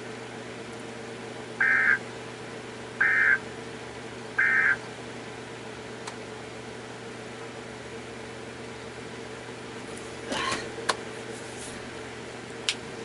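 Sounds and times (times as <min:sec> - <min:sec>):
faint steady hum: 0:00.0 - 0:13.0
buzzy data bursts: 0:01.6 - 0:02.0, 0:03.0 - 0:03.4, 0:04.4 - 0:04.8.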